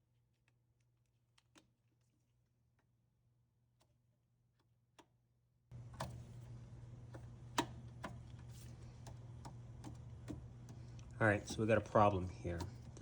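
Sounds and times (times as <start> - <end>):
washer shift actuator humming: 5.7 - 13.0
actuator clicking: 5.8 - 13.0.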